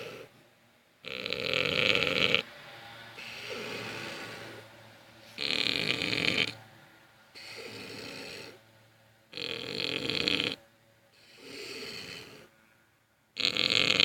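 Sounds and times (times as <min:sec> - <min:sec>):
person snoring heavily: 0:00.0 - 0:00.3, 0:01.0 - 0:02.5, 0:03.2 - 0:04.7, 0:05.4 - 0:06.6, 0:07.4 - 0:08.6, 0:09.3 - 0:10.6, 0:11.2 - 0:12.5, 0:13.4 - 0:14.0.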